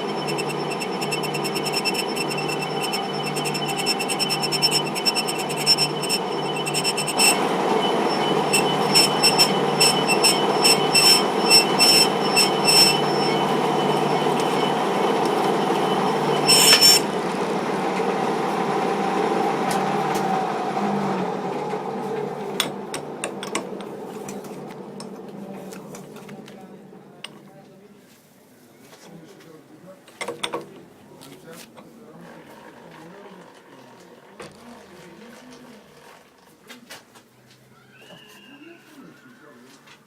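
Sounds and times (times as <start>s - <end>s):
high-pitched tool squeal: 0.0s - 17.2s, 37.8s - 39.1s
metal lathe cutting metal: 0.0s - 26.2s
motor hum: 0.0s - 27.1s.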